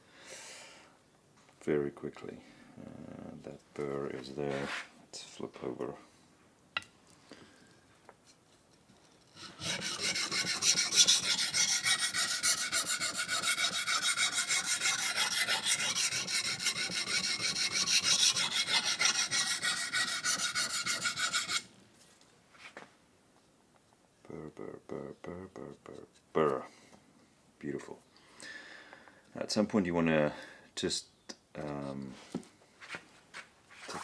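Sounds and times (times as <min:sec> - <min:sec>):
knife scraping on sharpening hone: 0:09.4 - 0:21.7.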